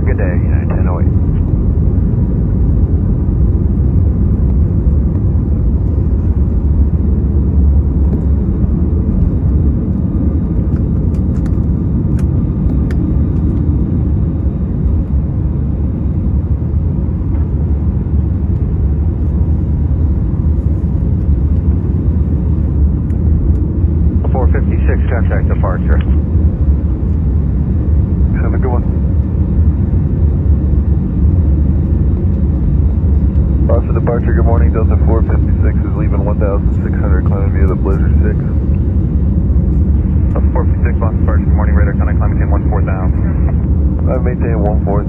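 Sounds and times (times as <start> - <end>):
jet engines rumbling in cabin: 0.0 - 45.0.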